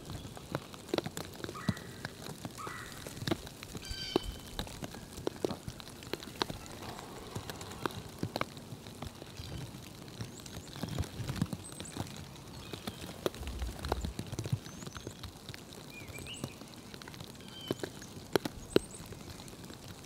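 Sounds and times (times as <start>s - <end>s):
low rumbles: 13.2s - 14.8s.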